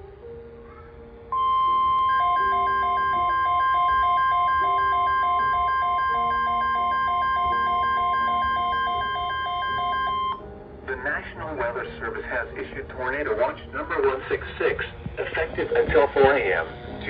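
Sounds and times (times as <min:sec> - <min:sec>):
loud steady alarm tone: 0:01.4 - 0:10.4
rapid beeping: 0:01.4 - 0:10.4.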